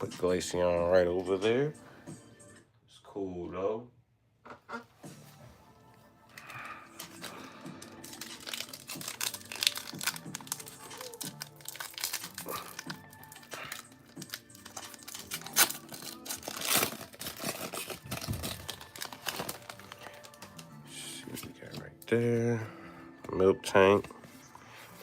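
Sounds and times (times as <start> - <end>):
foil wrapper crinkling and tearing: 6.3 - 20.7.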